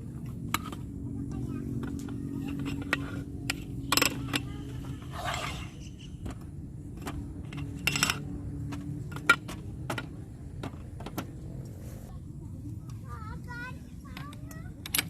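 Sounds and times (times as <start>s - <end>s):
low hum: 0.0s - 14.1s
metal gear scraping: 4.5s - 5.8s.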